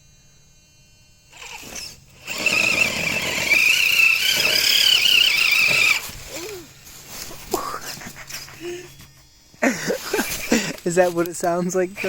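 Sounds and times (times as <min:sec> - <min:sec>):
electric motor whining: 0:01.3 - 0:09.2.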